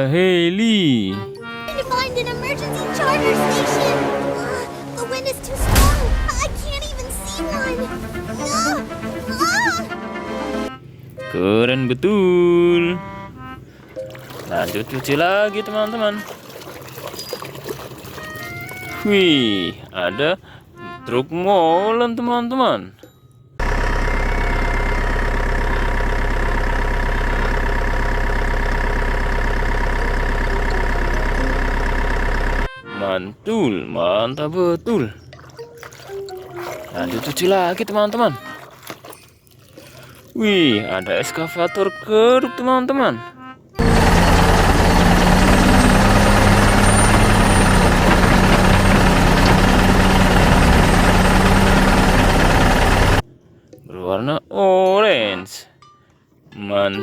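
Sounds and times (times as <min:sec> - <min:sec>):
truck engine idling: 0:00.0 - 0:14.1, 0:23.6 - 0:32.8, 0:43.4 - 0:53.2.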